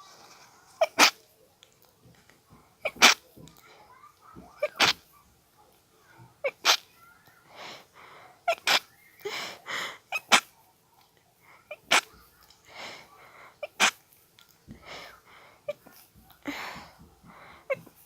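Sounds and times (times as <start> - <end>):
person stifling sneezes: 0.8 - 1.2, 2.8 - 3.2, 4.6 - 5.1, 6.4 - 6.9, 8.4 - 10.5, 11.7 - 12.2, 13.6 - 14.0
breathy sounds: 7.4 - 10.3, 11.4 - 18.0.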